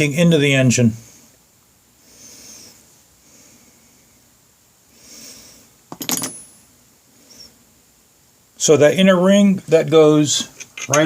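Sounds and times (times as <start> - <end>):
metal engine parts clinking: 5.9 - 6.6.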